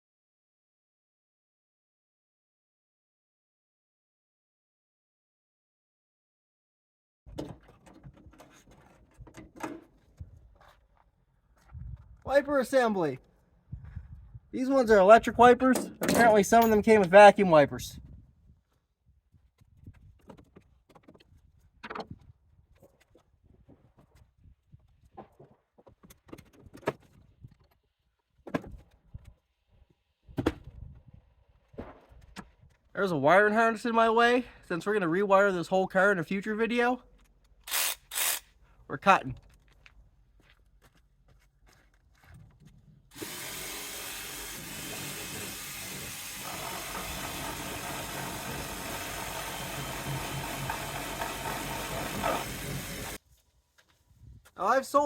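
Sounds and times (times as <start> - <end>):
metal clinks and knocks of tools: 15.8 - 17.1
power cutting tool running: 43.1 - 53.2.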